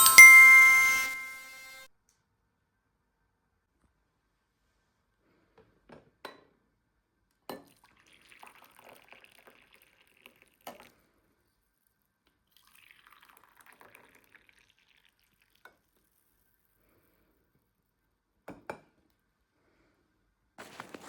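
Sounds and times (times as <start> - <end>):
liquid pouring: 7.7 - 10.9, 12.5 - 16.1.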